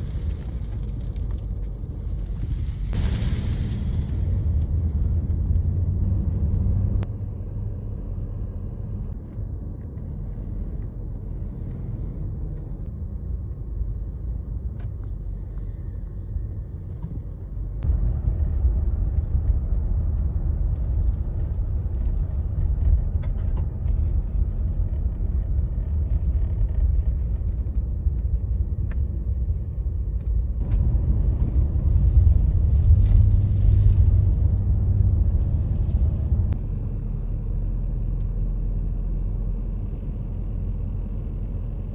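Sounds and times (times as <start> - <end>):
strong wind buffeting microphone: 17.8 - 36.6.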